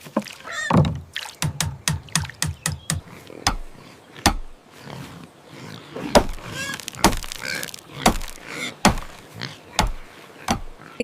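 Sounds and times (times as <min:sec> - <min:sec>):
sharp knocks: 0:00.7 - 0:04.5.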